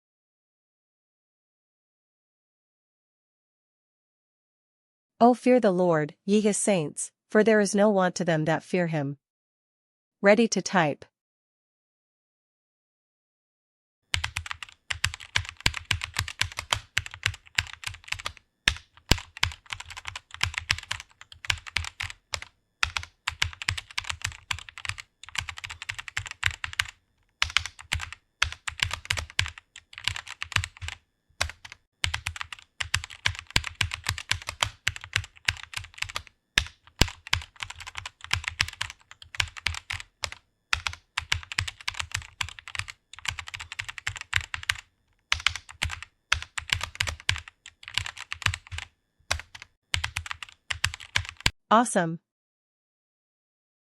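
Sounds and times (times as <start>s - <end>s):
fast keyboard typing: 14.1s - 51.6s.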